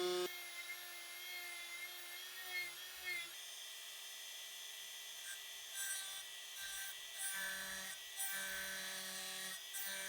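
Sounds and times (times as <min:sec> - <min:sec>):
rotary tool whining on metal: 0:00.0 - 0:00.3.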